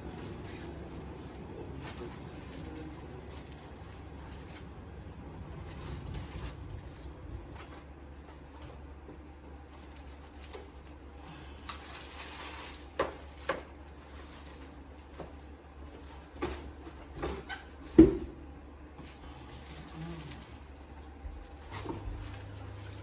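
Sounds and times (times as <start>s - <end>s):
steady low hum: 0.0s - 23.0s
packaging rustling: 0.1s - 8.6s, 9.6s - 16.7s.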